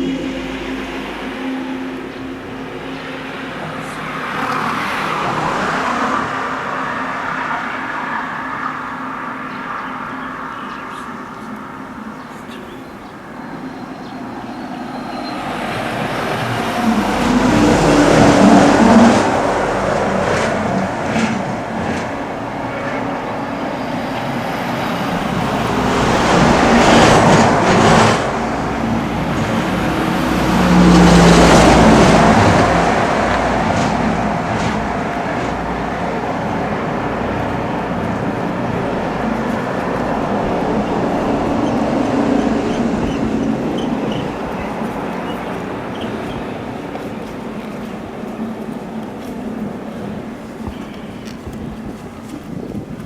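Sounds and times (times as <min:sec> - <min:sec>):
engine hum: 0:00.0 - 0:53.0
vehicles passing close by: 0:00.0 - 0:53.0.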